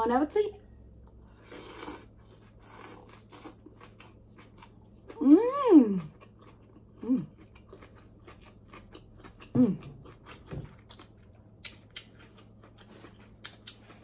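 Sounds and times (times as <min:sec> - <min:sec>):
chewing: 0:01.6 - 0:05.2, 0:06.0 - 0:14.0
person humming: 0:09.6 - 0:09.9.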